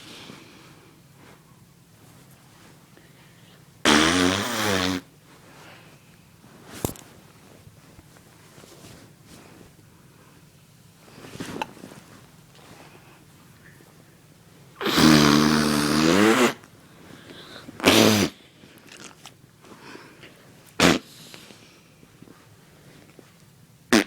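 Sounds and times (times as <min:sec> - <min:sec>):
farts: 0:03.8 - 0:05.1, 0:14.8 - 0:16.7, 0:17.8 - 0:19.2, 0:20.8 - 0:21.2.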